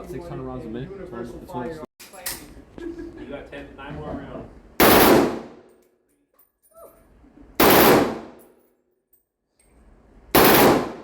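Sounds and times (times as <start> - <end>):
gunshots: 4.8 - 5.6, 7.6 - 8.4, 10.4 - 11.0.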